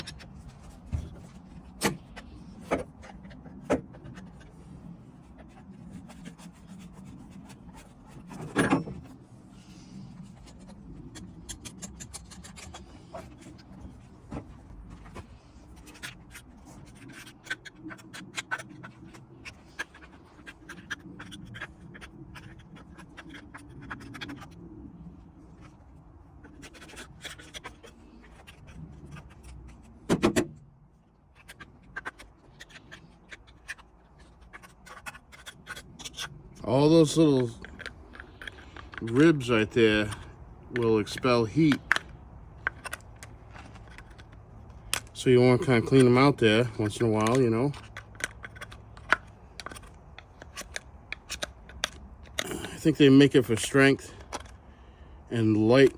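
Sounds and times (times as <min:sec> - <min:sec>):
tools clicking on metal and plastic: 0:10.3 - 0:13.8, 0:37.3 - 0:46.2, 0:46.8 - 0:52.9, 0:53.7 - 0:54.6.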